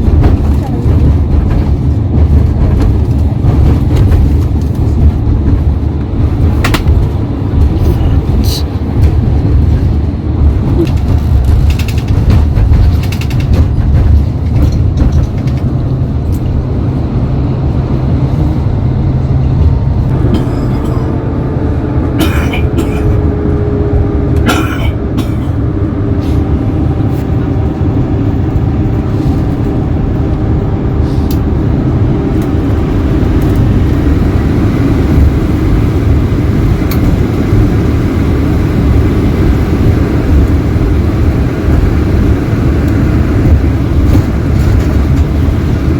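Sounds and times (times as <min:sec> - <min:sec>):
coach engine and road rumble: 0:00.0 - 0:45.9
faint engine whine: 0:00.0 - 0:45.9.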